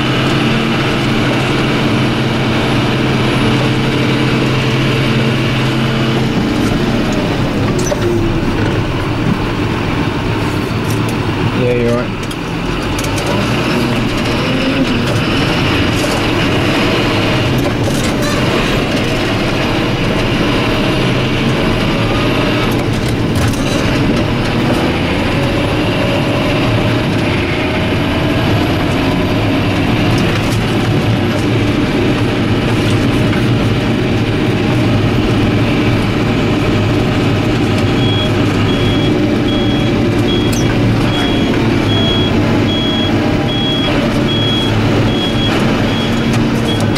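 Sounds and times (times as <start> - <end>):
tractor diesel engine running: 0.0 - 46.9
high even beeping: 38.0 - 46.9.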